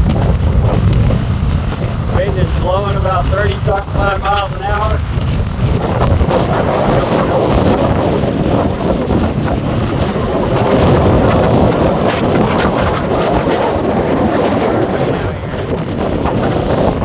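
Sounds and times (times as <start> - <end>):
surf crashing on beach: 0.0 - 17.0
wind buffeting microphone: 0.0 - 17.0.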